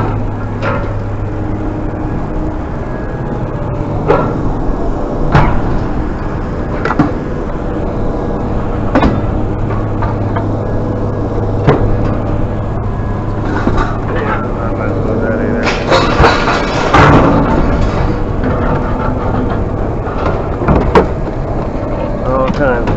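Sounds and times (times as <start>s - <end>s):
vehicle engine running: 0.0s - 22.9s
sharp metallic knocks: 5.3s - 6.0s, 8.8s - 10.5s, 15.6s - 21.7s.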